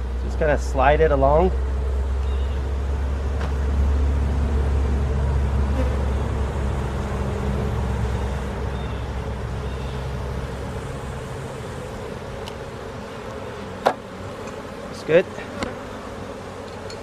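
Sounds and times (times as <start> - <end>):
bees buzzing: 0.0 - 17.0
low rumble: 2.8 - 11.8.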